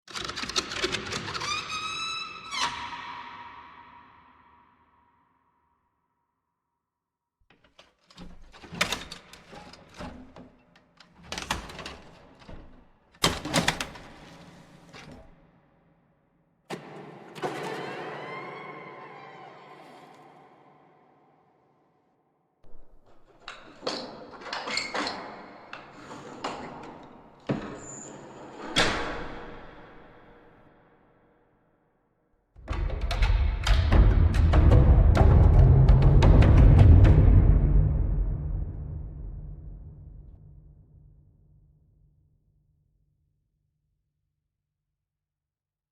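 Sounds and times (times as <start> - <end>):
door creaking and rattling: 0.1 - 3.4, 7.4 - 15.5, 16.7 - 20.6, 22.6 - 30.6, 32.6 - 35.3
knocks and rattling clicks: 7.5 - 15.4.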